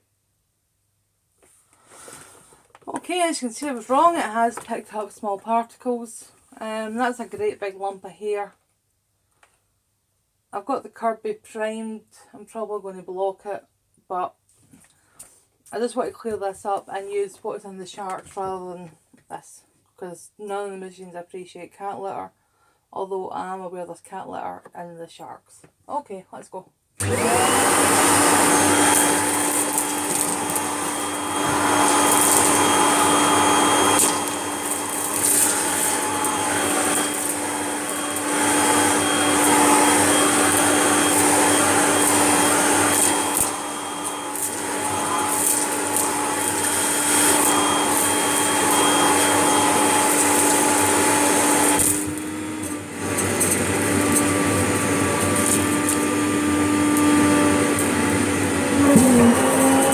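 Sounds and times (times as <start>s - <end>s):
vacuum cleaner motor hum: 27.0s - 59.9s.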